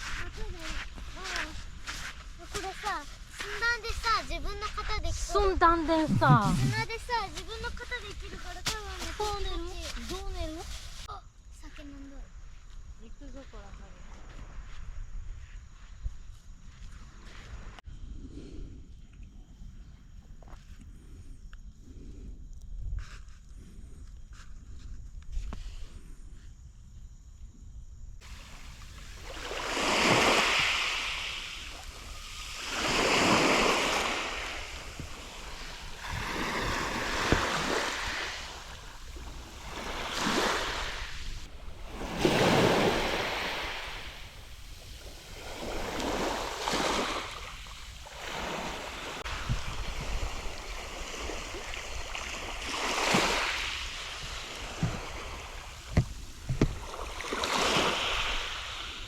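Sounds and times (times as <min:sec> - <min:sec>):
waves breaking on a beach: 0:00.0 - 0:11.1, 0:28.2 - 0:59.0
wind rumble on microphone: 0:00.0 - 0:11.6, 0:12.2 - 0:59.0.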